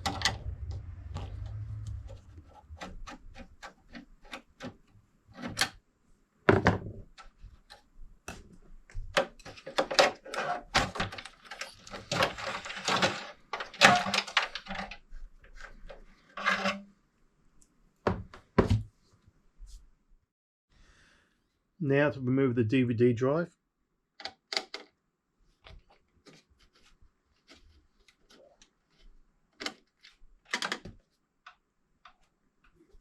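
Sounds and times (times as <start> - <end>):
plastic and metal scraping: 0.0 - 5.7, 6.6 - 16.9.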